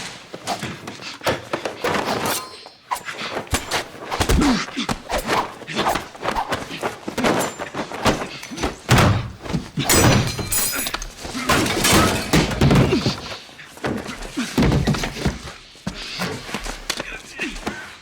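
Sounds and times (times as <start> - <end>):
bodies slamming into walls: 3.4 - 16.5
heavy blows and thuds: 3.5 - 10.6, 11.4 - 13.3.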